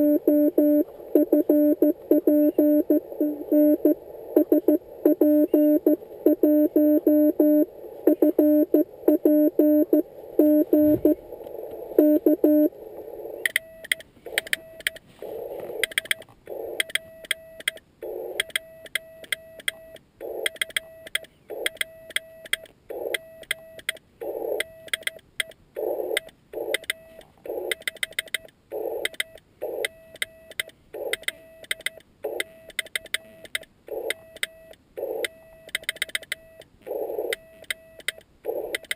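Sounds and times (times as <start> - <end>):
morse code tones: 0.0 - 11.2, 12.0 - 12.8.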